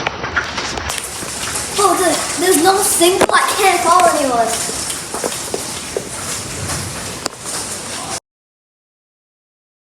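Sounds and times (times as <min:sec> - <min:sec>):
wind: 0:00.0 - 0:08.2
heavy rain: 0:00.3 - 0:08.2.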